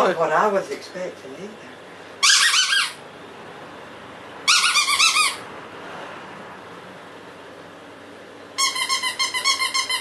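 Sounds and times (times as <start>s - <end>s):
squeaker toy squeaking: 2.2s - 3.0s, 4.5s - 5.4s, 8.6s - 10.0s.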